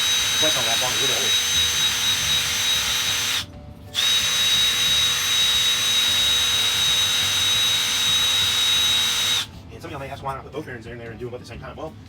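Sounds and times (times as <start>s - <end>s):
power drill whining: 0.0s - 9.5s.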